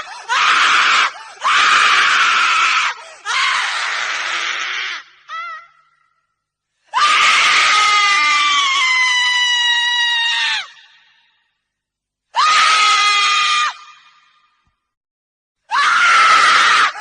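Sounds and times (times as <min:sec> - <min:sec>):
woman screaming: 0:00.1 - 0:06.0, 0:07.0 - 0:11.0, 0:12.4 - 0:14.1, 0:15.7 - 0:17.0.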